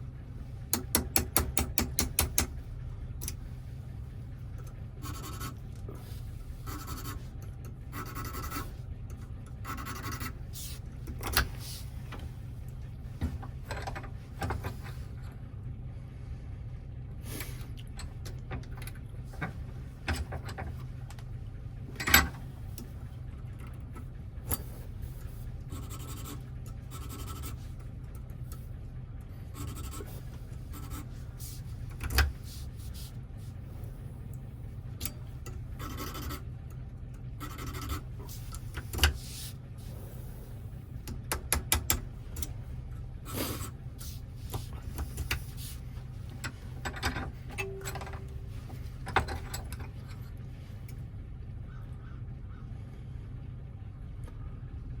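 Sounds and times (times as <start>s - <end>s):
steady low hum: 0.0s - 55.0s
small metallic clicks and scrapes: 35.0s - 36.8s, 37.4s - 39.6s, 43.4s - 51.0s.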